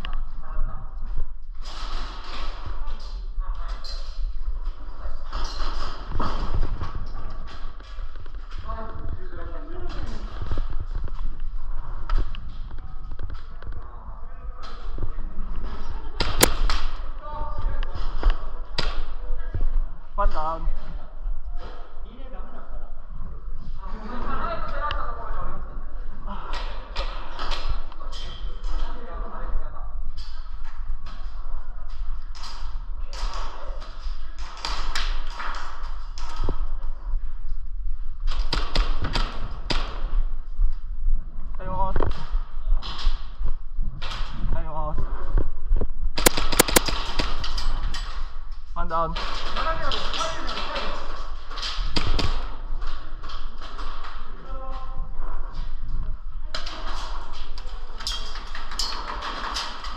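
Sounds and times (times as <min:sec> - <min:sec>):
footsteps indoors: 0:00.0 - 0:22.2
sharp cracks and clicks: 0:16.2 - 0:17.1, 0:46.2 - 0:48.2
airsoft pistol cracks: 0:46.2 - 0:47.0.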